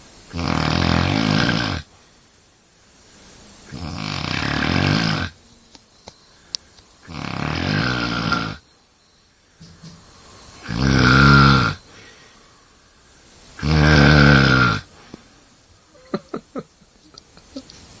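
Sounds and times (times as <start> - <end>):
person snoring: 0.3 - 1.9, 3.7 - 5.4, 7.0 - 8.6, 10.6 - 12.2, 13.6 - 14.9
quiet breathing: 5.9 - 13.8, 14.5 - 16.1.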